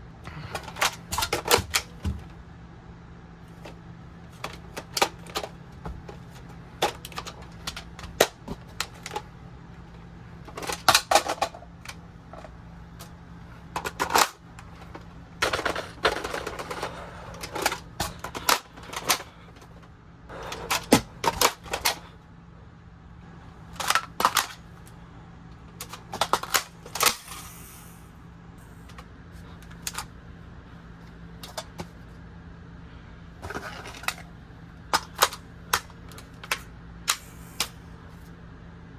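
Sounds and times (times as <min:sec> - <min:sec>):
rifle parts rattling and sliding: 0:00.5 - 0:02.3, 0:03.4 - 0:09.3, 0:09.9 - 0:22.1, 0:23.7 - 0:24.9, 0:25.7 - 0:27.7, 0:28.9 - 0:30.1, 0:31.4 - 0:32.1, 0:33.4 - 0:34.3, 0:34.9 - 0:38.3.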